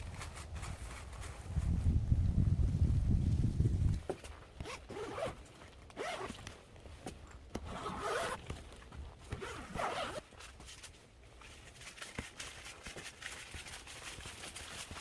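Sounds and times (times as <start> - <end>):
zipper pulled: 4.6 - 6.5, 7.6 - 8.5, 9.2 - 10.3.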